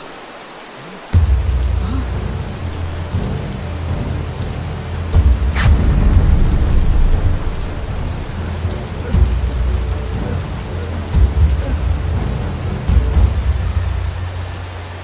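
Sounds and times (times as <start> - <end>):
cartoon heavy rain: 0.0 - 15.0
sharp crack: 1.2 - 11.2
deep rumble: 1.2 - 15.0.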